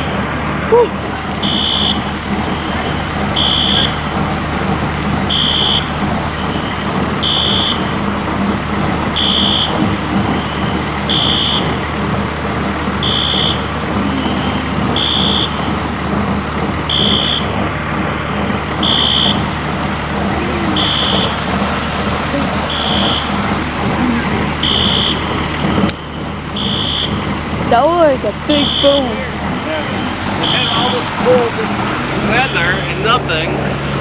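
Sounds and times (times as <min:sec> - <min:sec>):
fire alarm beeping: 0:01.4 - 0:04.1, 0:05.3 - 0:08.1, 0:09.2 - 0:11.8, 0:13.0 - 0:15.8, 0:16.9 - 0:17.6, 0:18.8 - 0:19.5, 0:20.8 - 0:21.4, 0:22.7 - 0:23.4, 0:24.6 - 0:27.3, 0:28.5 - 0:29.1, 0:29.9 - 0:31.0.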